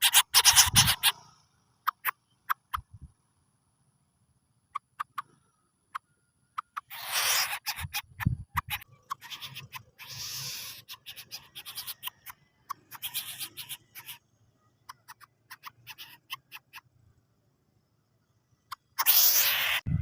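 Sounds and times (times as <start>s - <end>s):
bird hissing bursts: 6.9s - 7.8s, 9.2s - 11.9s, 19.0s - 19.8s.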